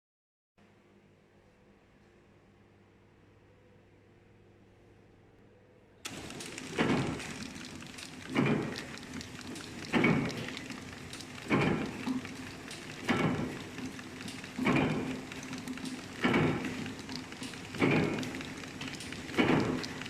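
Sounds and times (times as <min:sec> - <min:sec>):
packing machine humming: 0:06.0 - 0:20.0
noisy crackling bursts: 0:06.1 - 0:20.0.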